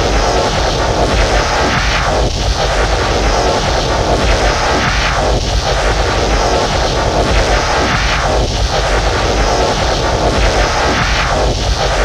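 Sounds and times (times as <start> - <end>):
crackling buzz over deep rumble: 0.0 - 12.0.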